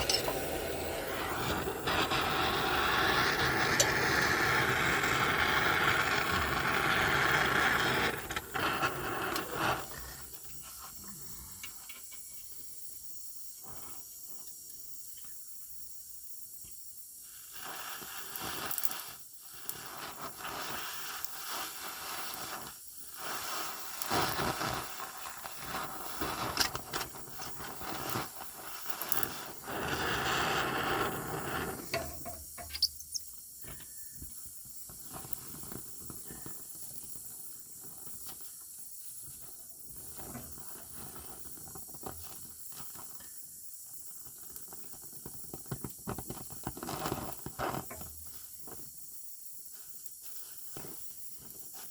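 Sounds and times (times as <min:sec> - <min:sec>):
welding hissing and crackling: 0:00.0 - 0:15.1, 0:16.6 - 0:51.9.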